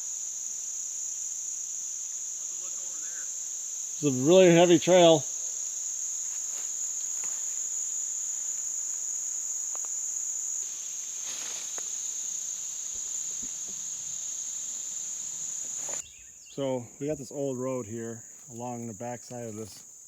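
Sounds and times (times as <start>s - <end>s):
insects singing: 0.0s - 20.0s
soft rustle: 6.2s - 9.0s, 10.6s - 16.1s.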